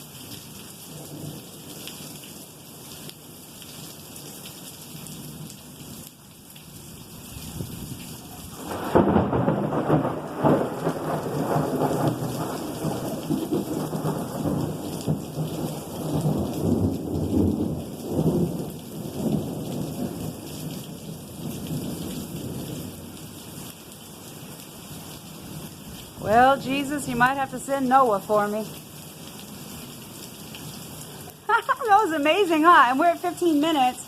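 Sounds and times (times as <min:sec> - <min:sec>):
steady rain: 0:00.0 - 0:34.0
rolling thunder rumbling: 0:07.5 - 0:20.4
thunder crack: 0:08.6 - 0:14.8.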